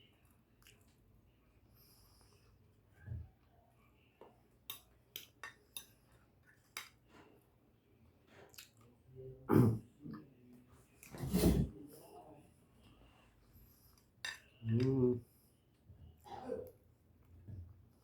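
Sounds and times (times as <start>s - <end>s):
cutlery clinking on a plate: 14.2s - 14.5s.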